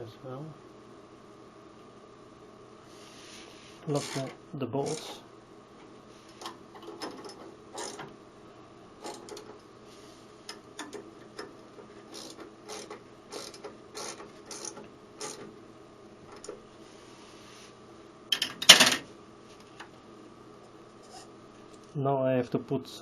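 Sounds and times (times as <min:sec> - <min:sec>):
ratchet wrench clicking: 0:07.0 - 0:08.0, 0:12.1 - 0:15.4.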